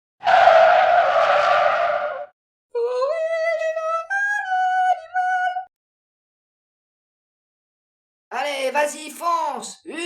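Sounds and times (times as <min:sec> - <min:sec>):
tyre screech: 0:00.2 - 0:02.3.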